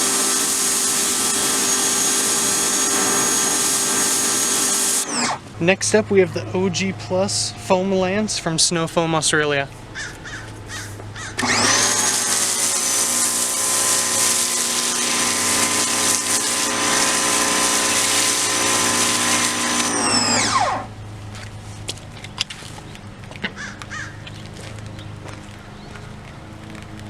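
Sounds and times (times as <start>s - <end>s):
pressure washer pump running: 0.0s - 5.5s, 11.4s - 21.1s.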